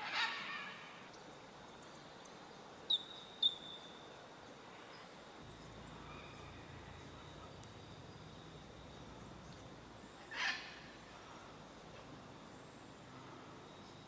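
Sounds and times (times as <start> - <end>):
bush ambience: 0.0 - 14.0
faint high whine: 5.4 - 14.0.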